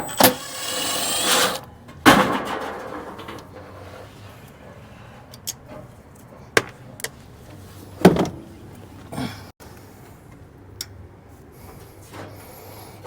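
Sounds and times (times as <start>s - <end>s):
sheet metal knocks and clanks: 2.0s - 3.6s.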